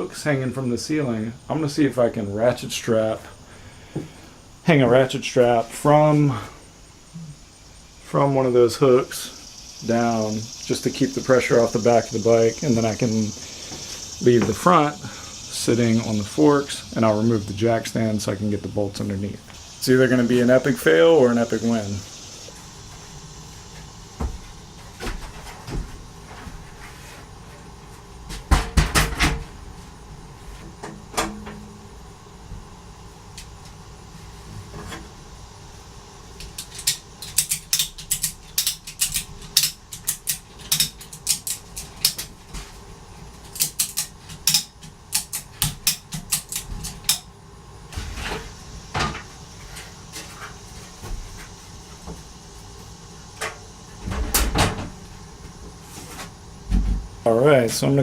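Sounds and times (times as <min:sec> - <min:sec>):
ratchet strap clicking: 0:36.5 - 0:42.3, 0:43.5 - 0:47.3.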